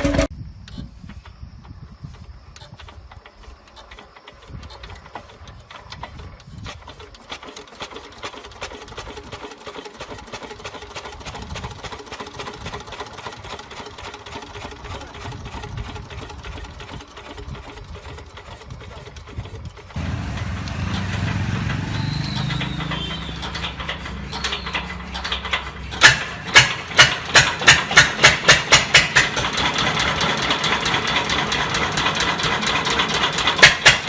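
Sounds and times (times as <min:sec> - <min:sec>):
diesel engine clattering: 0:00.0 - 0:00.3, 0:19.3 - 0:34.0.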